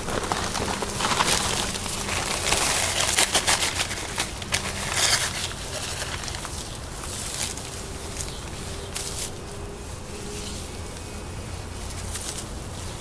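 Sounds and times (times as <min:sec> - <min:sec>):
packing material crinkling: 0:00.0 - 0:07.8.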